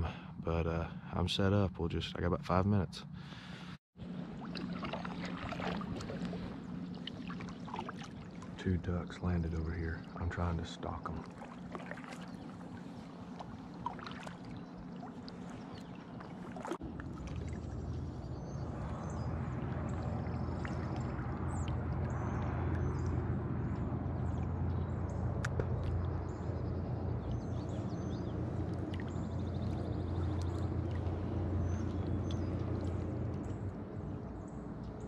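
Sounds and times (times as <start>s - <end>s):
water sloshing around kayak: 4.0s - 35.0s
low rumble: 12.3s - 35.0s.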